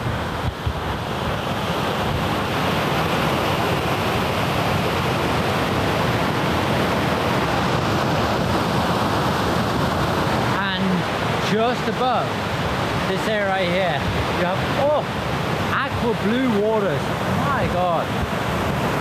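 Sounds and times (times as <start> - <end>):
waterfall roaring: 0.0 - 19.0.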